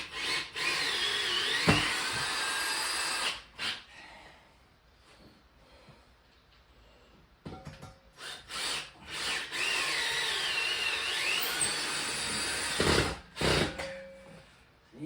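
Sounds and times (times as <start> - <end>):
power drill running: 0.0 - 3.4, 8.2 - 13.8.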